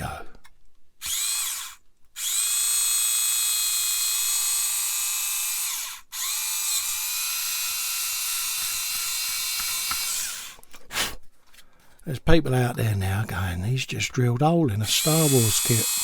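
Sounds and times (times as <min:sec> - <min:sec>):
electric drill whining: 0:01.0 - 0:10.6, 0:14.9 - 0:16.0.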